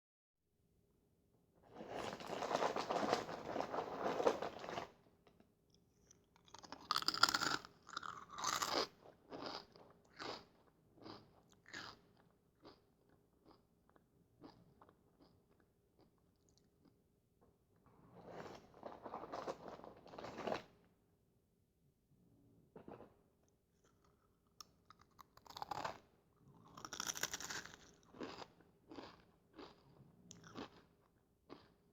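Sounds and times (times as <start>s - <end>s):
crunching and chewing chips: 1.8s - 5.0s, 6.0s - 17.0s, 18.2s - 20.8s, 23.8s - 31.9s.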